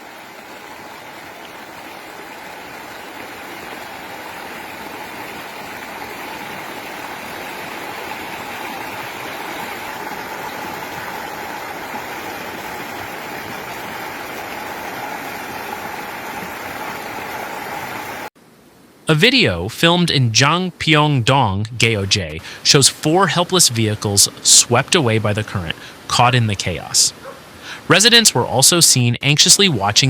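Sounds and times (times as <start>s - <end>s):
floodwater rushing: 0.0s - 18.3s.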